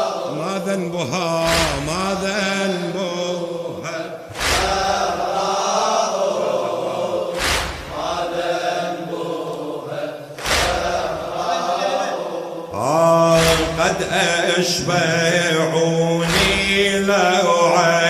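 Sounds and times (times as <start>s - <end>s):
men chanting a lament: 0.0s - 18.0s
heavy beat: 1.4s - 3.0s, 4.3s - 6.2s, 7.3s - 8.8s, 10.4s - 11.8s, 13.2s - 15.5s, 16.2s - 17.4s.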